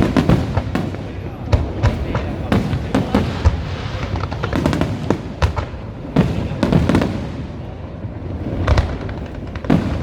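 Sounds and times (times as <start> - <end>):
fireworks bangs and crackles: 0.0 - 10.0.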